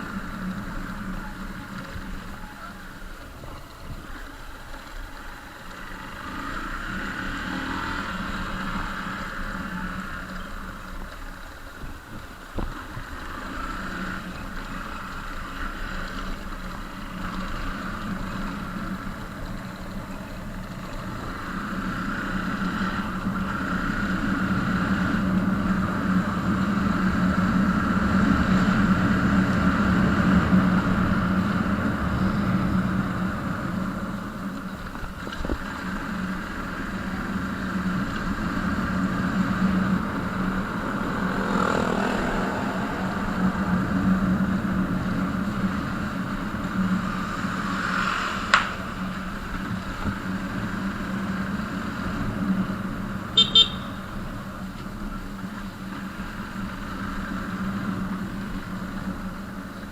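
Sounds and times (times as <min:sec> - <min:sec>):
vehicle engine running: 0:00.0 - 0:59.9
wind rushing and road noise: 0:00.0 - 0:59.9.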